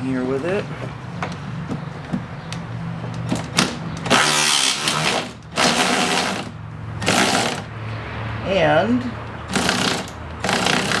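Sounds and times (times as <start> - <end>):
power ratchet whirring: 3.1 - 7.7, 9.5 - 11.0.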